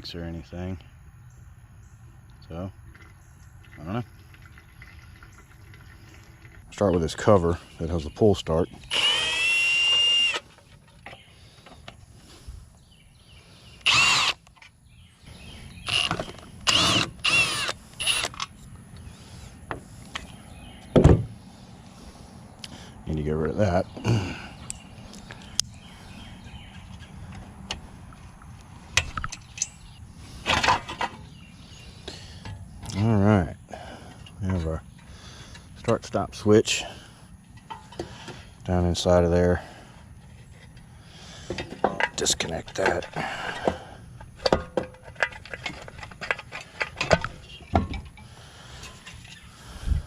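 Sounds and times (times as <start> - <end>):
engine parts rattling: 39.4 - 49.9
engine parts clicking and knocking: 40.2 - 49.4.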